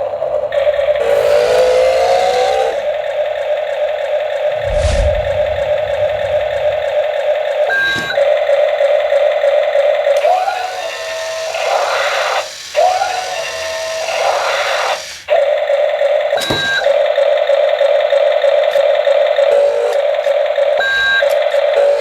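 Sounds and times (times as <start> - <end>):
buzzy toy engine tone: 0.0 - 4.4, 9.1 - 22.0
noisy electronic effect: 4.5 - 7.6.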